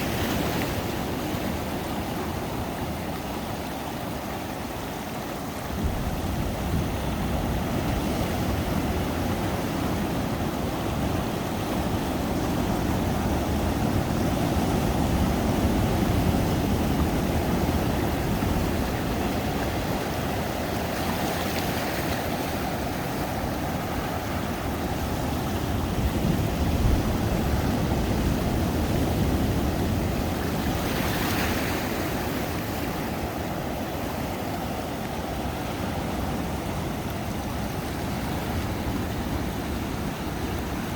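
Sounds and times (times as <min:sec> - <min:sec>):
hissing wash of surf: 0:00.0 - 0:40.9
waves breaking on beach: 0:00.0 - 0:40.9.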